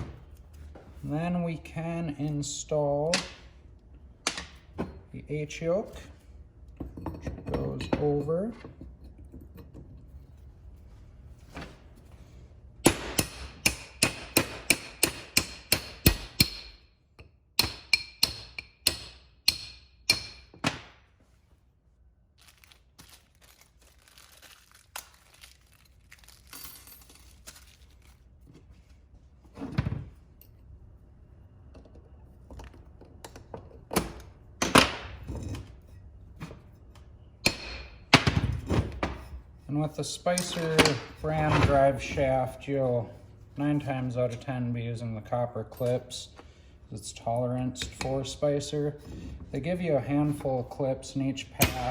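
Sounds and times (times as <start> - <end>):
hammer tapping on metal: 17.6 - 20.5.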